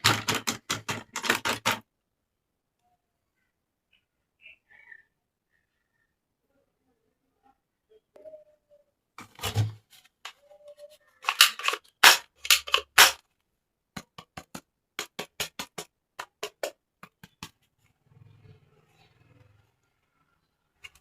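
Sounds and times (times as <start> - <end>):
sharp plastic clicks: 0.0 - 1.8, 11.2 - 13.2
plastic packaging crinkling: 11.2 - 13.2.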